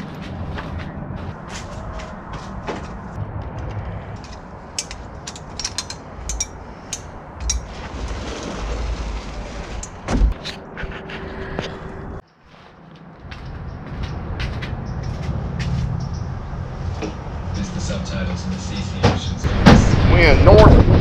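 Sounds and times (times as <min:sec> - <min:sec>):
rattles and clicks: 0:04.2 - 0:10.1.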